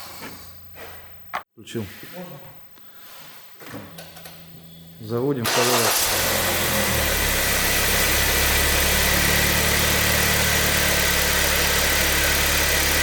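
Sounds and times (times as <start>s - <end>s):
car engine idling: 5.5s - 13.0s.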